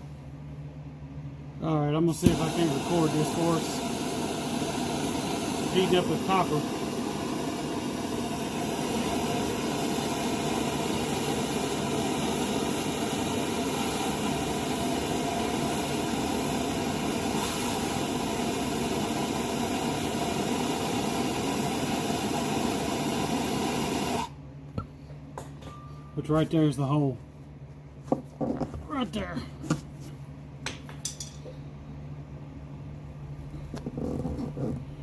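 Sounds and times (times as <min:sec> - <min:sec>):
gas torch hissing: 0:01.9 - 0:24.4.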